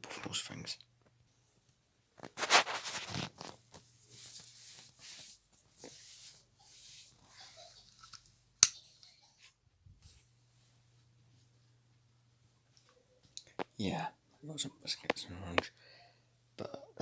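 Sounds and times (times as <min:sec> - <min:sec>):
clothing rustling and shuffling: 0:01.6 - 0:08.1.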